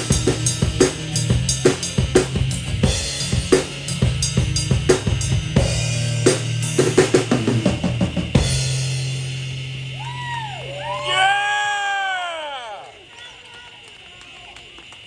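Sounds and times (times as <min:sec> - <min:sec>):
cymbal crash: 0:00.0 - 0:11.0
held low chord: 0:00.0 - 0:11.0
drum kit fills: 0:00.0 - 0:11.1.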